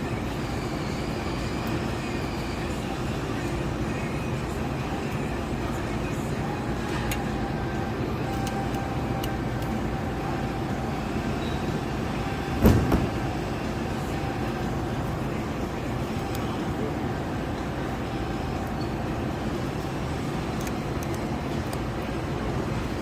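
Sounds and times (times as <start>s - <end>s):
steady machine hum: 0.0s - 23.0s
metal parts clicking: 20.5s - 21.9s.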